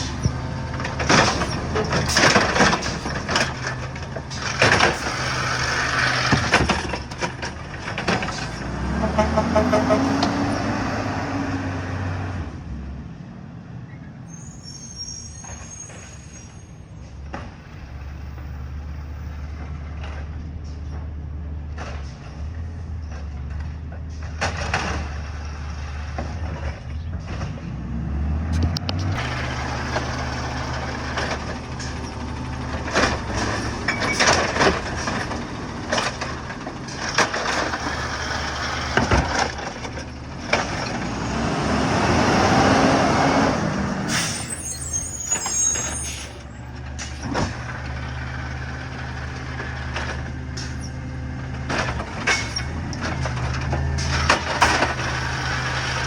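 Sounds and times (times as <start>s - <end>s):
knocks and clatter: 0.0s - 10.5s, 28.5s - 41.2s, 46.8s - 56.0s
garbage truck engine running: 0.0s - 11.9s, 17.3s - 56.0s.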